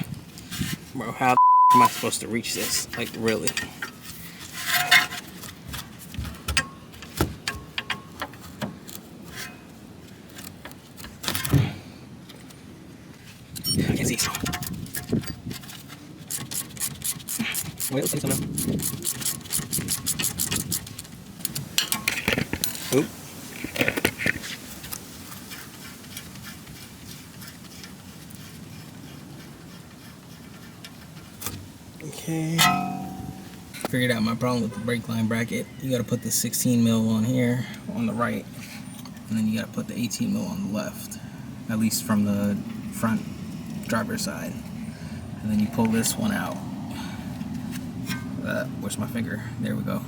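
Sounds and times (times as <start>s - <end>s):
hand tools clinking on metal: 2.7s - 4.0s, 32.6s - 35.0s
hand tools clicking on metal: 16.3s - 23.0s
loud metal knock: 32.6s - 33.7s.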